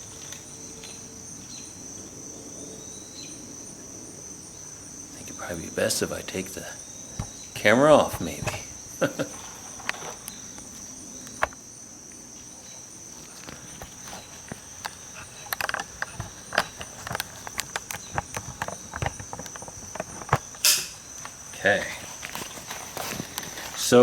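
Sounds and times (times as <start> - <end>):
high insect trill: 0.0 - 24.0
footsteps: 12.3 - 24.0
camera handling clicks and knocks: 13.4 - 21.3.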